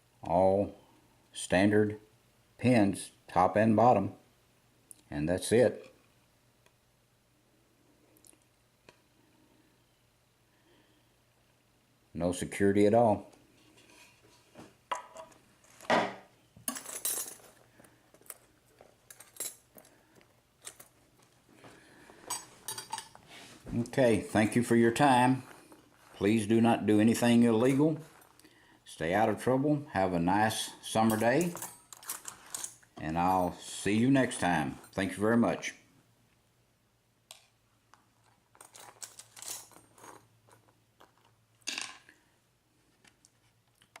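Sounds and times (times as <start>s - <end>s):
faint steady hum: 0.0s - 44.0s
small metal parts clinking: 16.7s - 20.0s, 20.6s - 21.0s, 22.2s - 23.2s, 31.0s - 33.6s, 37.9s - 42.1s.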